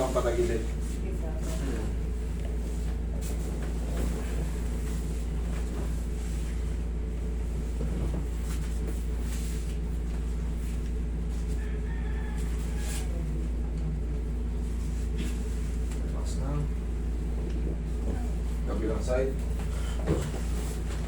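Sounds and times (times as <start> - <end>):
steady low hum: 0.0 - 21.0
rooster crowing: 11.3 - 13.4.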